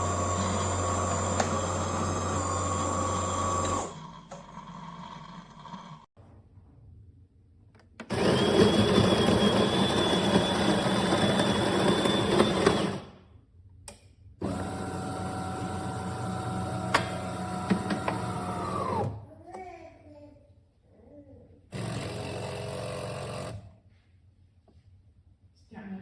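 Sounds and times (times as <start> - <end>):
espresso machine motor hum: 0.0 - 6.0, 14.4 - 19.1
espresso machine grinding: 0.0 - 6.1, 8.1 - 13.0, 14.4 - 19.1.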